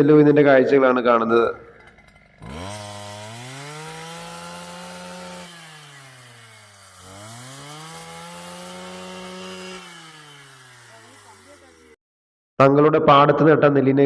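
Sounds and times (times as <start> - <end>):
brush cutter engine revving: 1.7 - 12.0.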